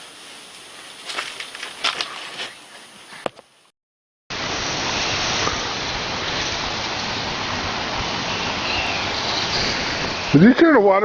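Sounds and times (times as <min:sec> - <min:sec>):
lawn sprinkler spraying water: 0:04.4 - 0:10.6.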